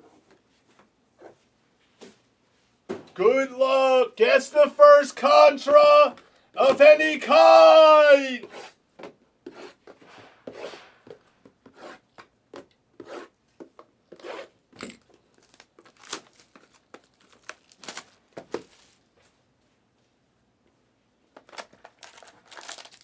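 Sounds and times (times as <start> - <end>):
packaging tearing and crinkling: 15.3 - 18.9, 21.5 - 23.0.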